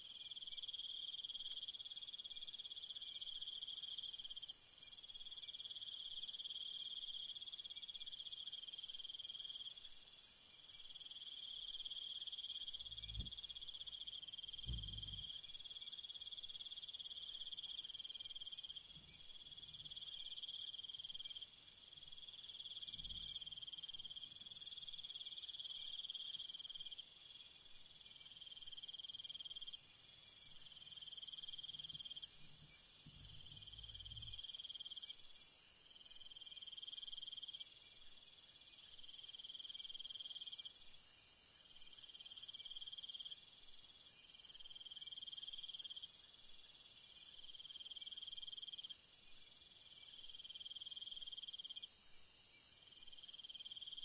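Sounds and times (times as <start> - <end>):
crickets chirring: 0.2 - 54.0
faint low thumps: 14.7 - 15.3.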